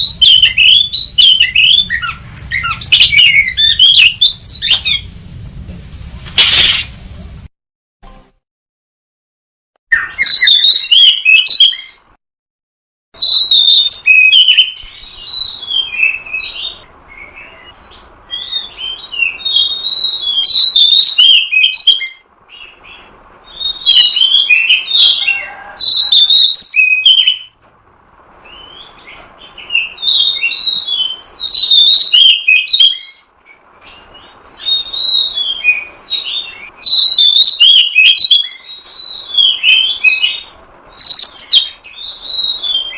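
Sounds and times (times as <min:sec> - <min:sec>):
bird song whistles and chattering: 0:00.0 - 0:05.1, 0:09.9 - 0:12.1, 0:13.2 - 0:27.6, 0:28.4 - 0:42.9.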